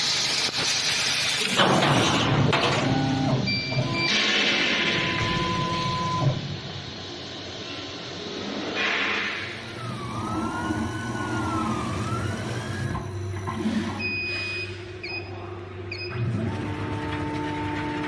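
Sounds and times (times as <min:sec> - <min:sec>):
stepper motors whining: 0:09.5 - 0:14.2
low machine hum: 0:09.5 - 0:18.0
motor tones: 0:09.6 - 0:14.4.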